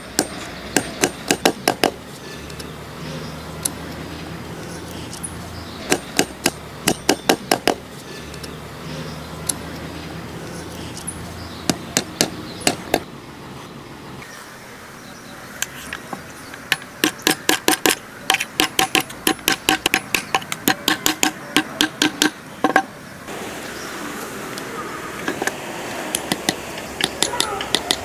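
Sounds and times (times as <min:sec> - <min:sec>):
rapid ringing hammer strikes: 0:00.0 - 0:02.0, 0:05.8 - 0:07.8, 0:16.7 - 0:22.9
steady hiss: 0:07.5 - 0:18.7, 0:19.9 - 0:28.0.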